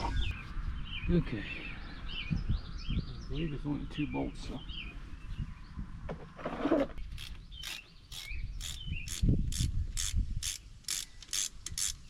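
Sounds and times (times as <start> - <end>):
socket ratchet clicking: 7.2 - 12.0.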